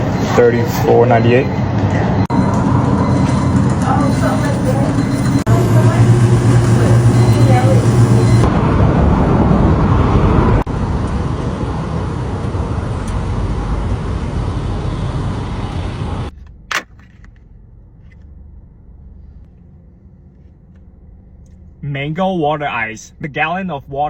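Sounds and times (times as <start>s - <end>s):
traffic rumble: 0.0s - 24.0s.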